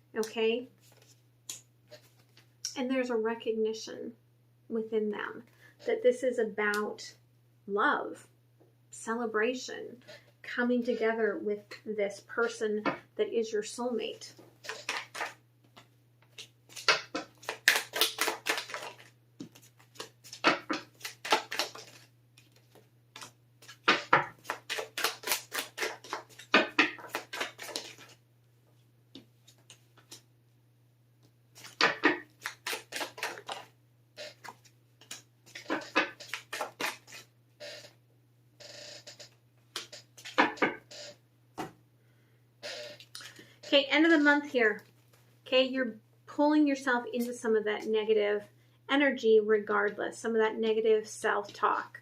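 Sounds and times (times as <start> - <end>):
cards being shuffled: 0.8 - 2.5, 14.6 - 28.2, 29.2 - 30.3, 31.6 - 37.8, 39.1 - 40.8.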